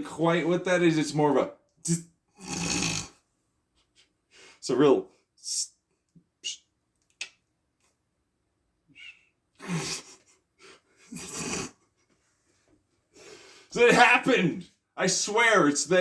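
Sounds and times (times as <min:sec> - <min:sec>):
mouth hisses and clicks: 0:02.4 - 0:03.1
person breathing: 0:04.3 - 0:04.6, 0:09.0 - 0:11.4, 0:13.1 - 0:13.8.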